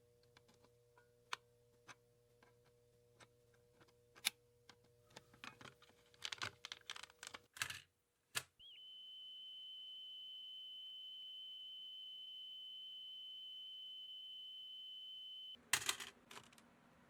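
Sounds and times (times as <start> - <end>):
steady high-pitched tone: 8.6 - 15.6.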